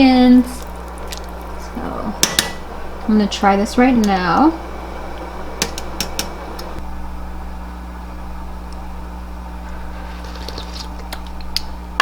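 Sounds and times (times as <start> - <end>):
exhaust fan humming: 0.0 - 12.0
utensils clicking against pot: 2.2 - 2.7, 5.6 - 6.8.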